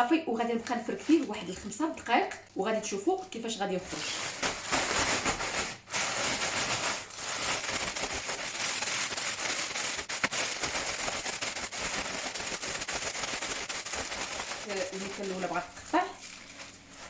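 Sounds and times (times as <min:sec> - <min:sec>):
plastic bag crinkling: 0:00.4 - 0:02.0, 0:02.8 - 0:17.0.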